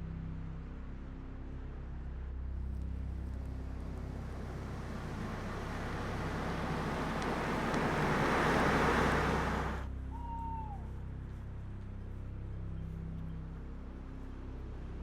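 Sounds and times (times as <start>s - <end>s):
steady low hum: 0.0s - 10.1s
rushing noise like traffic: 0.0s - 15.0s
short falling whistle tone: 10.2s - 10.9s.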